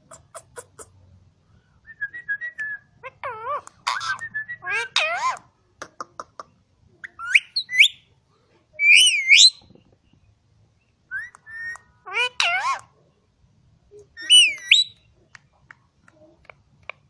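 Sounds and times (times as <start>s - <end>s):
parakeet whistling: 7.1s - 8.0s, 8.8s - 9.6s, 11.1s - 11.8s, 14.2s - 15.0s.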